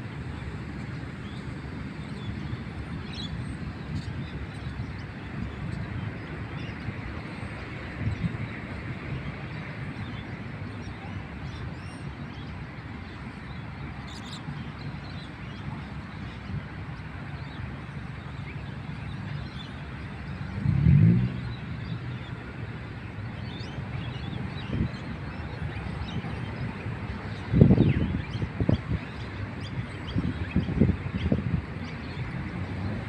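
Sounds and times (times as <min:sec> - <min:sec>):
distant traffic: 0:00.0 - 0:33.0
wind rumble: 0:00.0 - 0:33.0.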